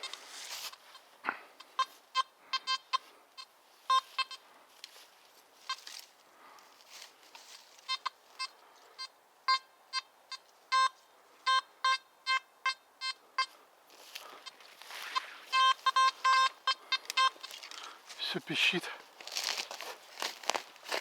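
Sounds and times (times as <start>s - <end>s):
metal detector beeps: 1.6s - 4.4s, 5.6s - 6.0s, 7.8s - 13.6s, 14.4s - 18.7s.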